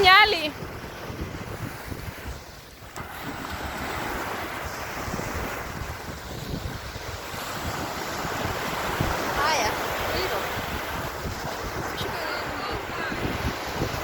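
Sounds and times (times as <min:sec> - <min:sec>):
sea surf washing onto beach: 0:00.0 - 0:14.0
wind rumbling on microphone: 0:00.0 - 0:14.0.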